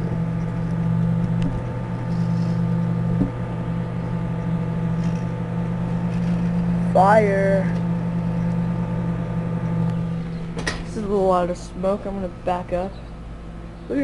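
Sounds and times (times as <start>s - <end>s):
microwave oven humming: 0.0s - 14.0s.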